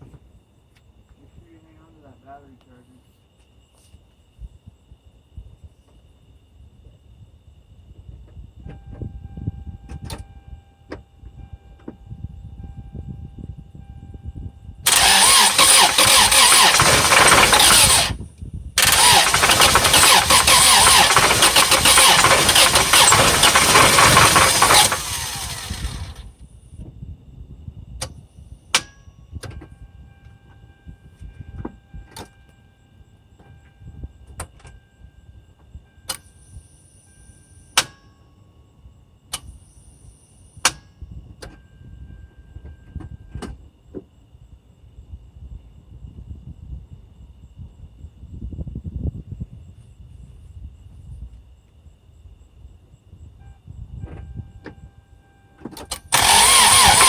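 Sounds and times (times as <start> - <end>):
car engine cranking: 14.9 - 18.2, 18.8 - 26.3, 55.8 - 57.0.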